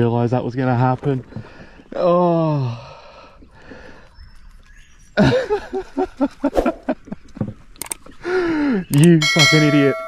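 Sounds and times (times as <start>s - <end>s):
man laughing: 5.2s - 7.3s.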